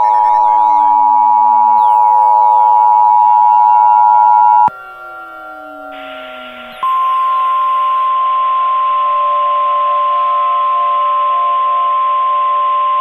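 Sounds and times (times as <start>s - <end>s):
long steady high beep: 0.0s - 13.0s
steady hiss: 4.7s - 8.1s.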